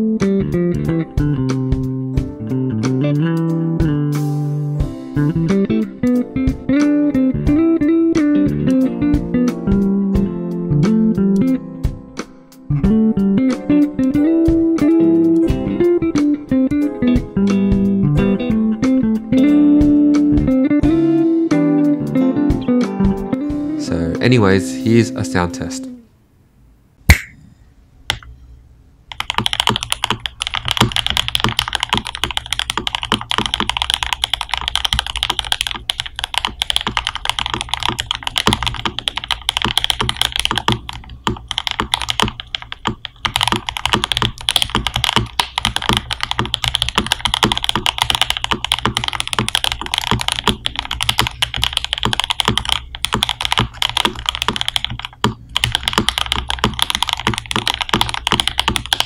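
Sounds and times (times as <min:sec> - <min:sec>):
single sharp knock: 0:27.1 - 0:27.4
mechanical keyboard typing: 0:29.1 - 0:59.0.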